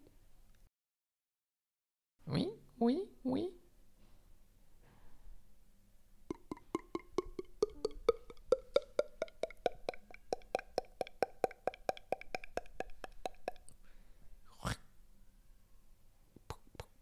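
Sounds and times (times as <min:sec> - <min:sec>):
tongue clicks: 0:06.3 - 0:13.8, 0:16.4 - 0:17.0.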